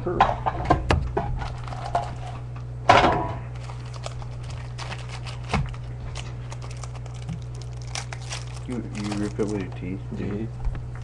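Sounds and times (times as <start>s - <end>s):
low electrical hum: 0.0s - 11.0s
foil wrapper crinkling and tearing: 3.5s - 10.0s.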